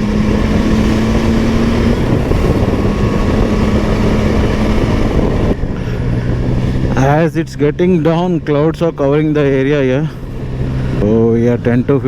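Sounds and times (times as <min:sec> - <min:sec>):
wind on microphone: 0:00.0 - 0:07.2
motorcycle engine running: 0:00.0 - 0:12.0.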